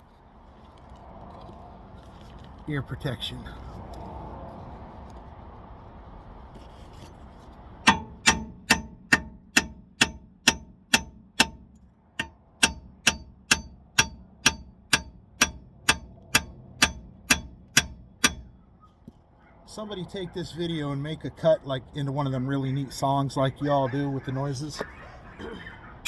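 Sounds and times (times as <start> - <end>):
hammer clanging on steel: 7.8 - 18.6.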